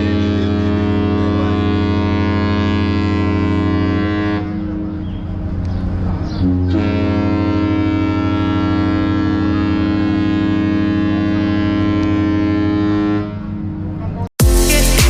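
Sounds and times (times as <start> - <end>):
ship horn blast: 0.0 - 14.2.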